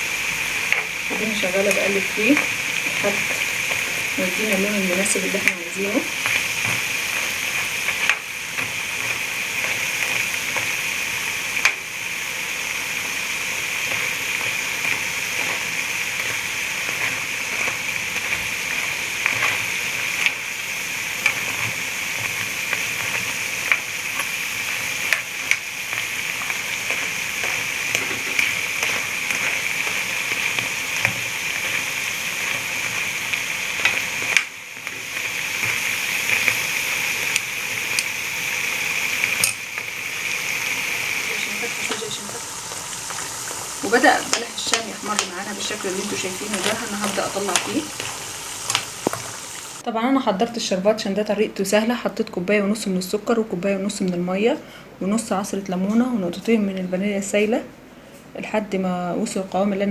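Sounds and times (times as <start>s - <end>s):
oil sizzling while deep-frying: 0.0s - 49.9s
utensil clicking against pan: 37.3s - 38.1s, 39.4s - 39.9s, 41.3s - 49.4s.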